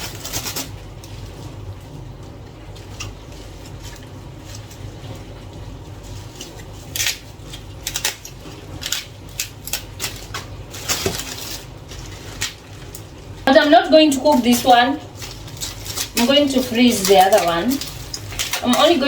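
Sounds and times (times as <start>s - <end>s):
low steady hum: 0.0s - 19.0s
greens rustling: 9.6s - 19.0s.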